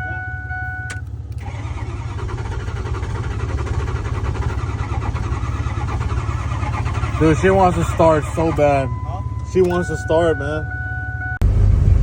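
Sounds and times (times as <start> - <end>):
engine cranking on starter motor: 0.9 - 9.0.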